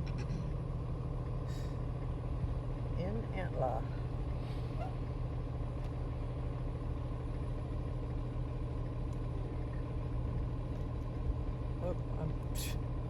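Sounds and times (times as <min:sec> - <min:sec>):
vehicle engine idling: 0:00.0 - 0:13.0.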